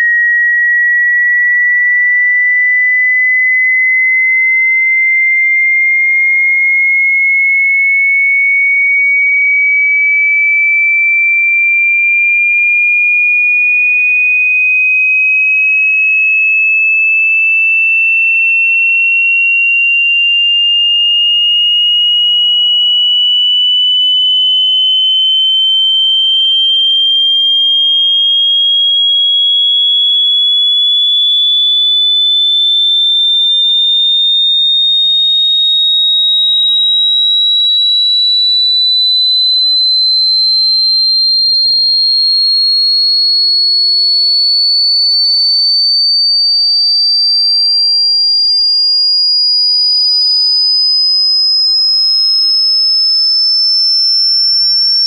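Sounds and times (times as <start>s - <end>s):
sine tone sweeping upward: 19.9s - 31.2s, 32.2s - 55.0s.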